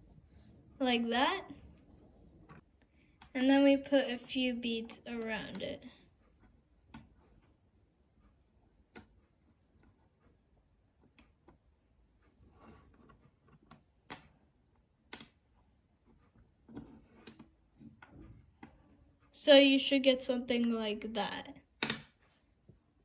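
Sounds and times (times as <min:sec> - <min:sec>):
magnetic balls clicking: 0:03.2 - 0:06.0, 0:15.0 - 0:15.6, 0:16.6 - 0:22.2.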